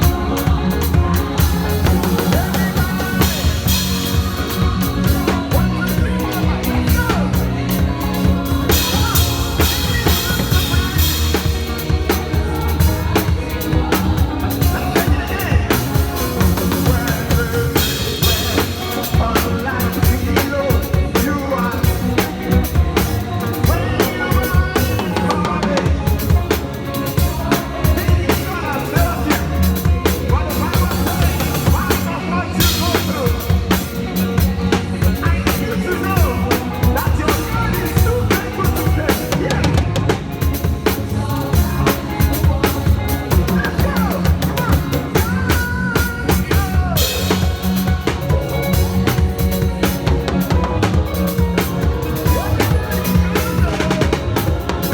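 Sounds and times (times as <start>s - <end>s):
drum kit played busily: 0.0s - 54.9s
live praise music: 0.0s - 54.9s.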